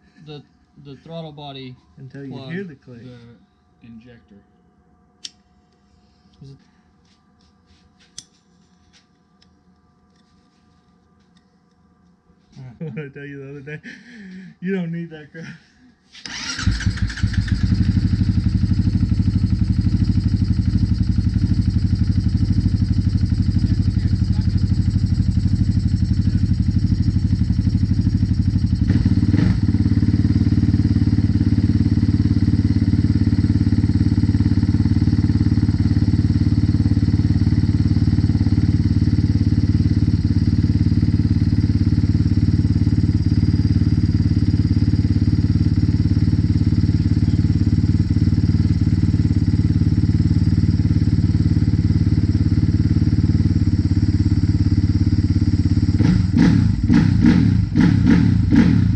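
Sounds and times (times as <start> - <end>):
motorcycle engine running: 16.3 - 58.9
engine knock: 18.4 - 58.9.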